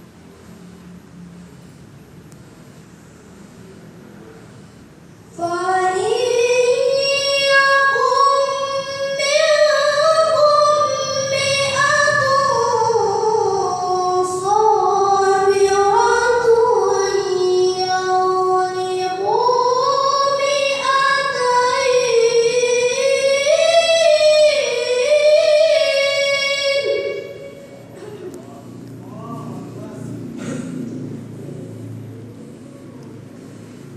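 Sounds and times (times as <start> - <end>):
child reciting melodically: 5.2 - 30.3.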